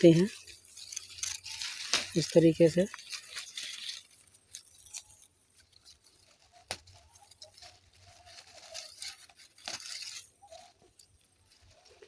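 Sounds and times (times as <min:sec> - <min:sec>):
leaves rustling and crackling: 0:00.0 - 0:12.0
stem snapping: 0:00.9 - 0:02.3, 0:06.5 - 0:07.6.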